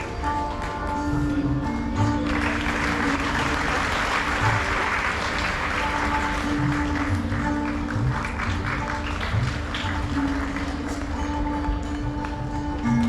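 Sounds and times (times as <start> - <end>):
background music: 0.0 - 13.0
audience applauding: 2.2 - 11.3.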